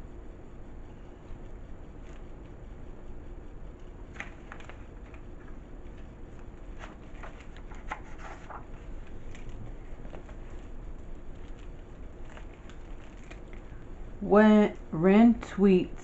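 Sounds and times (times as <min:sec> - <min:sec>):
low room hum: 0:00.0 - 0:16.0
book pages rustling and turning: 0:04.1 - 0:13.8.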